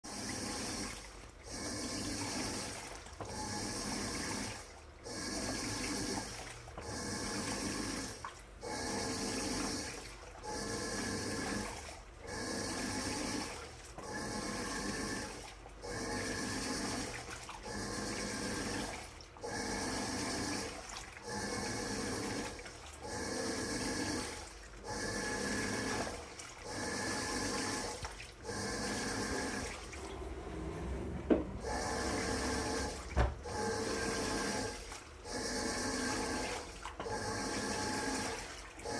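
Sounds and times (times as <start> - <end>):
washing machine motor humming: 0.0 - 38.9
water sloshing: 2.4 - 3.4, 20.5 - 21.3, 25.9 - 37.1, 37.8 - 38.9.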